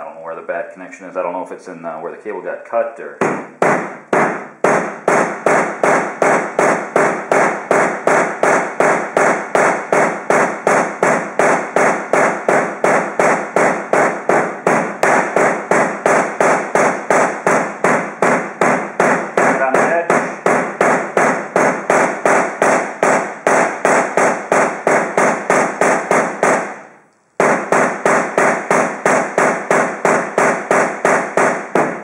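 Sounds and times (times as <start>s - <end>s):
hammer striking cable: 3.2s - 32.0s.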